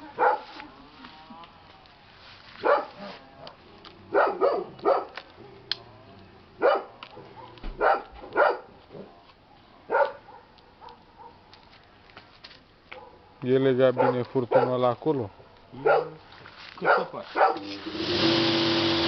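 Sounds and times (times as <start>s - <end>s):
dog barking: 0.1s - 0.6s, 2.6s - 3.1s, 4.1s - 5.2s, 6.6s - 8.7s, 9.9s - 11.4s, 12.9s - 13.2s, 13.9s - 14.8s, 15.8s - 16.2s, 16.8s - 17.7s.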